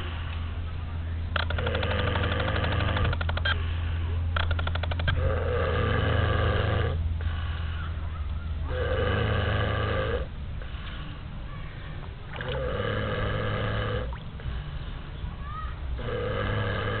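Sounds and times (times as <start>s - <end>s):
steady low hum: 0.0s - 17.0s
person snoring: 8.7s - 10.3s, 12.4s - 14.1s, 16.0s - 17.0s.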